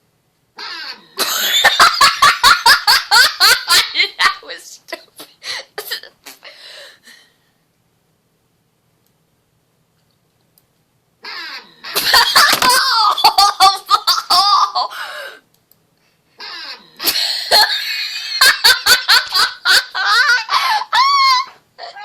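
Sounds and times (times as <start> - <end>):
high-pitched laughing: 0.6 - 6.1, 11.2 - 15.0, 16.7 - 22.0.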